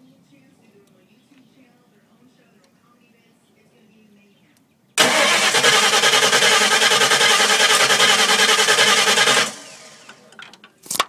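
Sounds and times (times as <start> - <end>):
starter cranking engine: 5.0 - 10.3.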